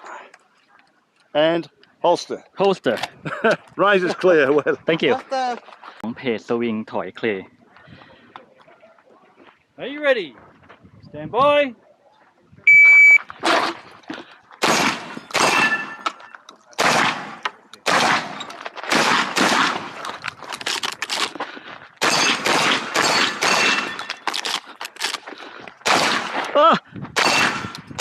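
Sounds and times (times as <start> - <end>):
shot timer beep: 12.7 - 13.3
shotgun shots: 14.6 - 16.1, 16.8 - 20.0, 22.0 - 24.1, 25.8 - 26.6, 27.2 - 28.0.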